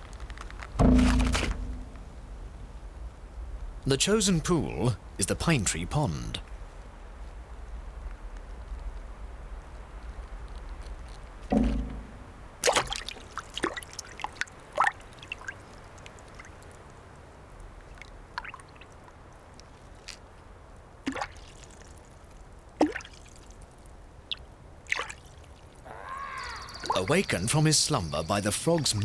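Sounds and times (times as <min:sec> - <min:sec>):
water drips and splashes: 0:11.5 - 0:20.3, 0:20.9 - 0:25.8, 0:26.5 - 0:27.2.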